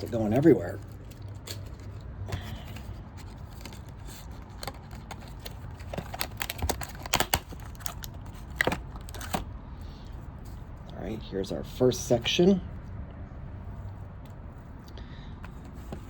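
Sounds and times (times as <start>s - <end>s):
plastic blister pack cracking: 3.6s - 9.4s.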